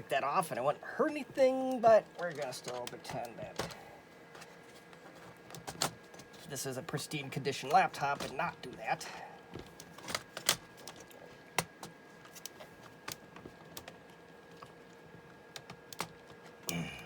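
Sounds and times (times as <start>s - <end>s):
faint steady hum: 0.0s - 17.0s
plastic parts clicking and tapping: 1.7s - 4.5s, 5.2s - 6.4s, 7.7s - 8.8s, 9.5s - 16.8s.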